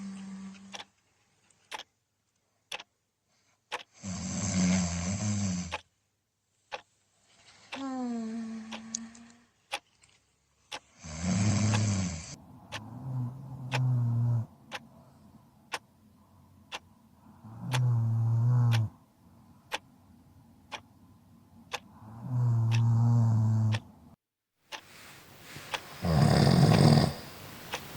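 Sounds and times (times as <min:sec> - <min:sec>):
clock ticking: 0:00.0 - 0:01.0, 0:01.6 - 0:01.9, 0:02.7 - 0:03.0, 0:03.7 - 0:04.0, 0:05.7 - 0:05.9, 0:06.7 - 0:06.9, 0:07.7 - 0:09.9, 0:10.6 - 0:15.0, 0:15.6 - 0:15.9, 0:16.7 - 0:16.9, 0:17.6 - 0:18.9, 0:19.7 - 0:19.9, 0:20.7 - 0:20.9, 0:21.7 - 0:21.9, 0:22.6 - 0:23.0, 0:23.6 - 0:23.9
loud raspy snoring: 0:04.0 - 0:05.8, 0:11.0 - 0:14.5, 0:17.4 - 0:19.0, 0:22.0 - 0:23.8, 0:26.0 - 0:27.3.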